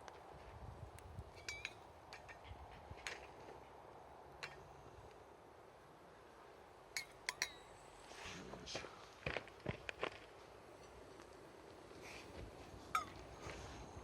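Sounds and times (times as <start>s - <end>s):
metallic clinks of cookware: 7.0s - 7.7s.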